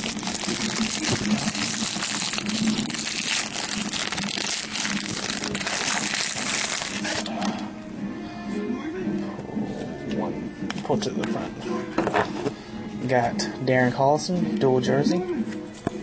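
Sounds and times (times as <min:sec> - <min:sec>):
plastic wrapping crinkling: 0:00.0 - 0:07.3.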